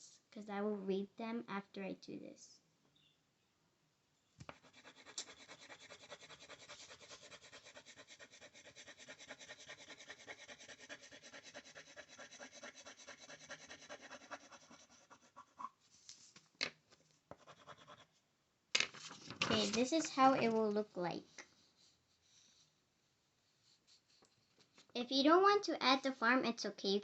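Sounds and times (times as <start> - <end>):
scribbling on paper: 4.4 - 15.9, 17.3 - 18.2.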